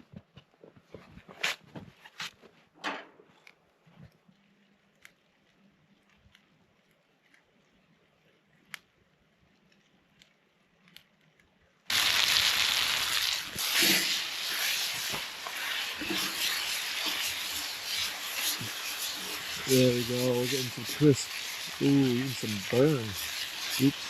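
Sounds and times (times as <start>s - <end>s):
faint crackles: 0.0s - 24.0s
food sizzling in a pan: 11.9s - 24.0s.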